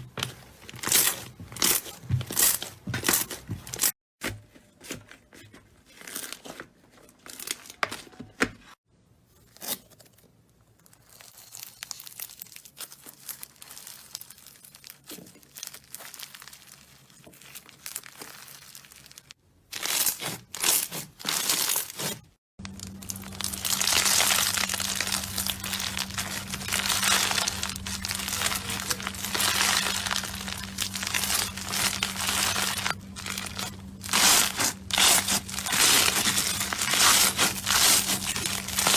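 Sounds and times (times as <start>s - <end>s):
slime crackling squeezed by hand: 11.0s - 22.1s, 22.7s - 38.9s
steady low hum: 22.6s - 38.9s.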